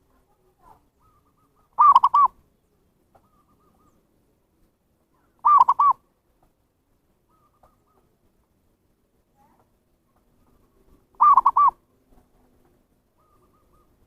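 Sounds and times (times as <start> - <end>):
faint coos of another dove: 0.8 - 2.4, 3.1 - 4.1, 5.2 - 6.0, 7.2 - 8.2, 10.4 - 14.0
dove cooing: 1.0 - 2.4, 5.4 - 6.0, 7.3 - 8.2, 10.4 - 11.8, 13.2 - 14.0.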